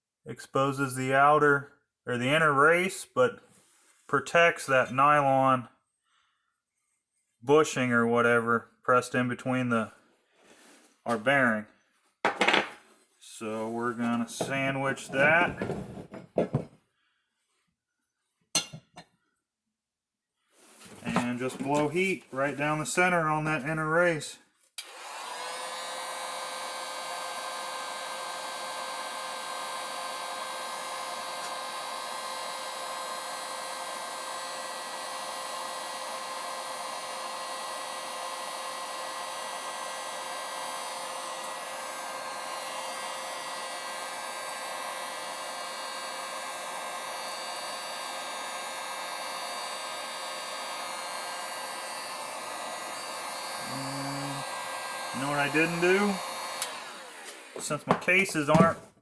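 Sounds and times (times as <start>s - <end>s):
heat gun blowing: 24.8s - 58.9s.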